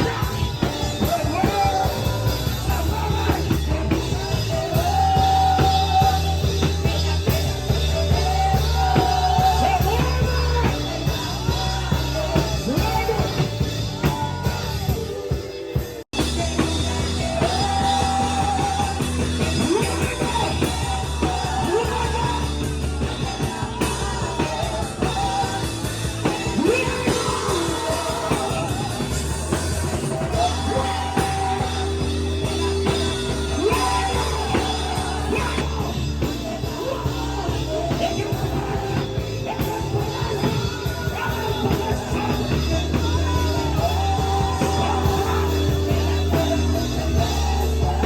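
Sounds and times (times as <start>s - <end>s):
person singing or yelling: 0.0s - 48.0s
rock music with drums: 0.0s - 48.0s.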